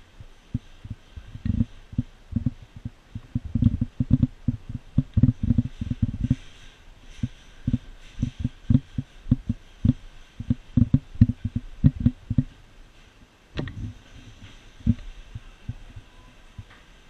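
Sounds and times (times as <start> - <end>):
dull low thumps: 0.0 - 6.4, 7.2 - 12.6.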